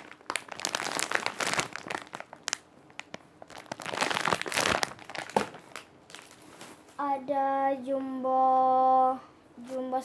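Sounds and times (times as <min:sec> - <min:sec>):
plastic packaging crinkling: 0:00.0 - 0:07.0.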